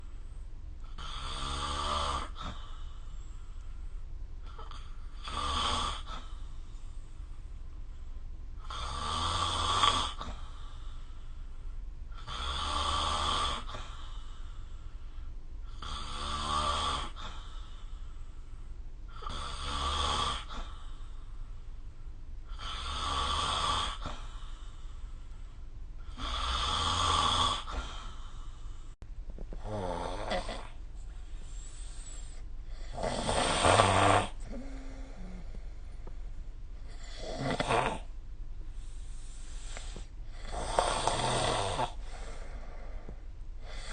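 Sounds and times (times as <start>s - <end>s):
person snoring: 0.9s - 3.1s, 4.4s - 6.5s, 8.6s - 11.2s, 12.2s - 14.7s, 15.7s - 18.2s, 19.1s - 21.2s, 22.5s - 25.0s, 26.0s - 30.8s, 31.4s - 36.1s, 36.8s - 38.2s, 38.8s - 43.9s.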